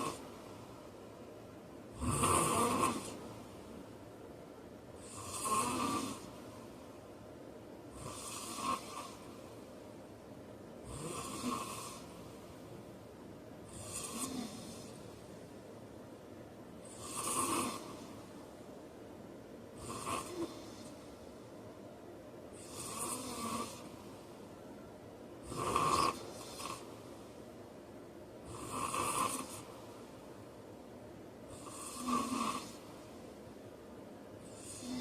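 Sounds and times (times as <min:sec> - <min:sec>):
man snoring: 0:01.9 - 0:03.2, 0:05.0 - 0:06.3, 0:07.9 - 0:09.3, 0:10.8 - 0:12.1, 0:13.7 - 0:15.0, 0:16.8 - 0:18.1, 0:19.8 - 0:20.9, 0:22.6 - 0:24.0, 0:25.4 - 0:26.9, 0:28.4 - 0:29.7, 0:31.5 - 0:32.8, 0:34.4 - 0:35.0.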